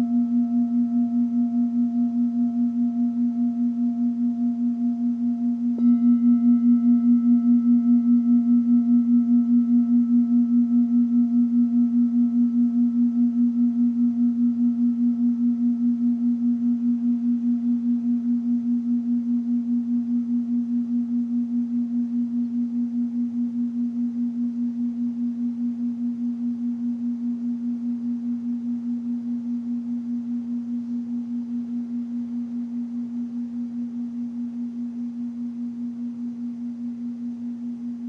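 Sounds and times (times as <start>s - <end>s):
singing bowl ringing: 0.0s - 38.0s
singing bowl struck: 0.0s - 38.0s.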